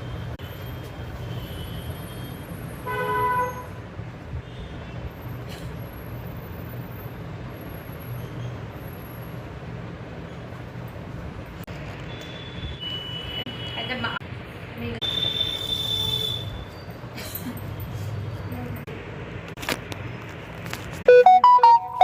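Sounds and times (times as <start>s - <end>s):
vehicle horn toot: 2.9s - 3.7s, 15.0s - 16.6s.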